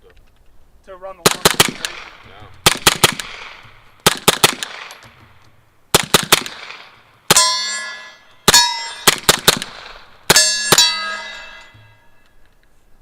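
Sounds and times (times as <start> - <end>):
suppressed pistol shots: 1.2 - 7.5, 8.4 - 10.8
steel target ringing: 7.3 - 9.2, 10.3 - 12.3.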